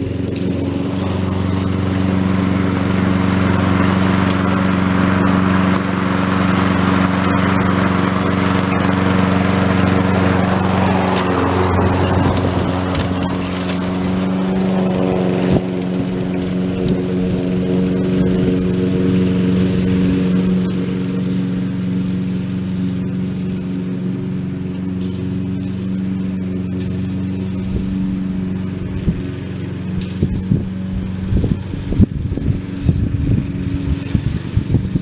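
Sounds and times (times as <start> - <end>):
lawn mower engine running: 0.0 - 35.0.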